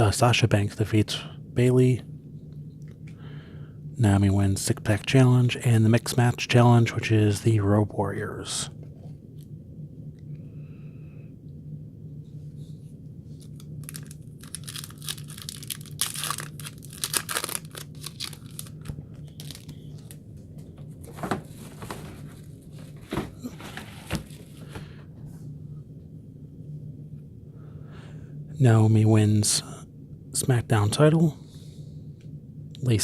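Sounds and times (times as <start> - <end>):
steady low hum: 0.0 - 33.0
wrapper tearing and crinkling: 13.4 - 20.2.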